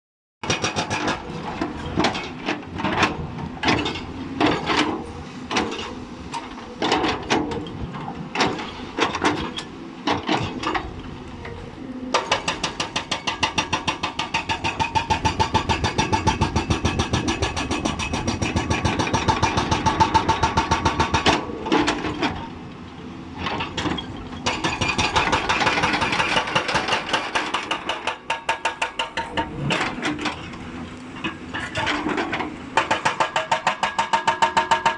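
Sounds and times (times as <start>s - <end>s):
hydraulic breaker hammering rock: 0.4s - 2.3s, 12.1s - 22.4s, 23.4s - 30.3s, 31.5s - 34.9s.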